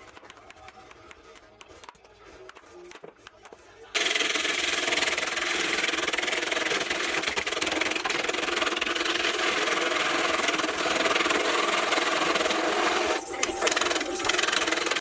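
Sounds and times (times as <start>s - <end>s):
turning tool scraping wood: 3.5s - 15.0s
lathe humming: 4.0s - 15.0s.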